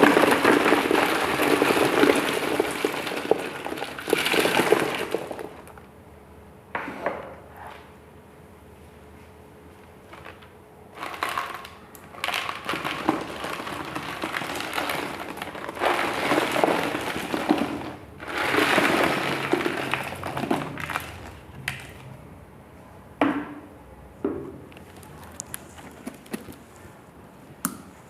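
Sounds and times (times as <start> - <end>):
ice cubes clattering in a box: 0.0 - 5.8, 11.0 - 22.0.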